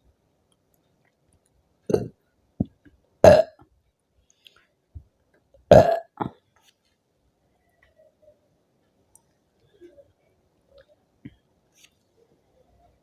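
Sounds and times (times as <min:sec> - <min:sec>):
woman burping: 0:01.9 - 0:02.2, 0:03.2 - 0:03.6, 0:05.7 - 0:06.4.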